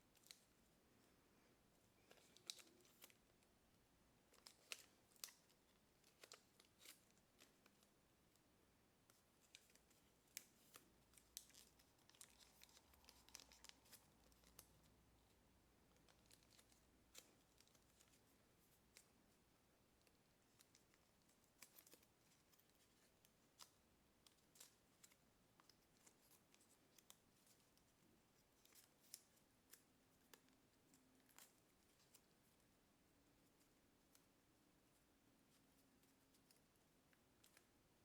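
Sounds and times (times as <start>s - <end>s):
paper being creased and folded: 9.4s - 14.7s.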